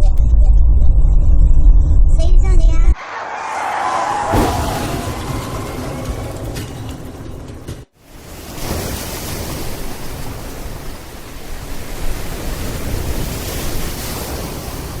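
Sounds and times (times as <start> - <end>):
low rumble: 0.0 - 3.2.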